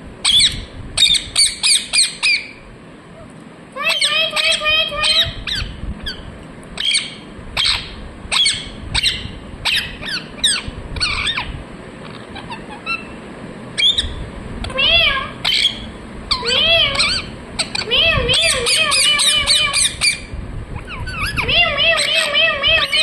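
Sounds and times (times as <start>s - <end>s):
parakeet squawking: 0.2s - 2.6s, 3.8s - 13.2s, 13.8s - 23.0s.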